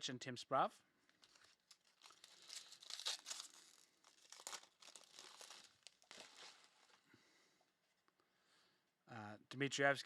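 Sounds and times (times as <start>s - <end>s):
card pack wrappers crinkling: 1.1s - 7.0s.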